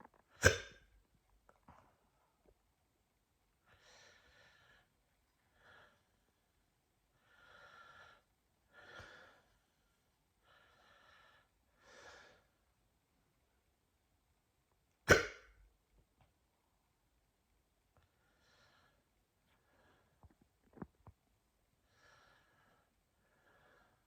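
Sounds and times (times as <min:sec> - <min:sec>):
quiet breathy breaths: 0:03.6 - 0:12.8, 0:18.0 - 0:21.2, 0:21.8 - 0:24.0
person hiccuping: 0:15.1 - 0:15.5.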